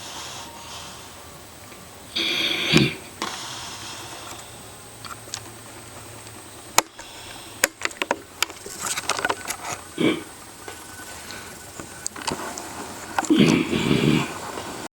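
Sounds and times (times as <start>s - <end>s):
man snoring: 0.0s - 1.3s, 2.1s - 4.6s, 10.0s - 10.3s, 13.2s - 14.9s.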